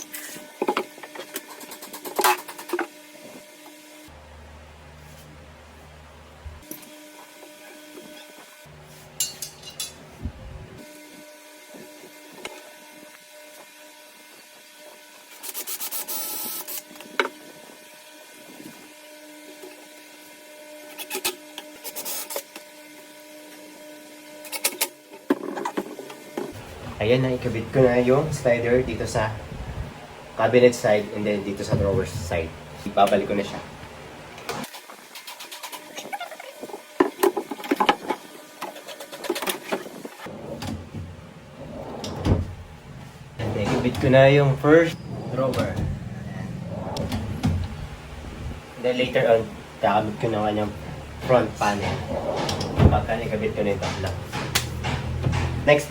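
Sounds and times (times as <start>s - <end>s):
metal drawer slides clicking: 50.8s - 55.7s.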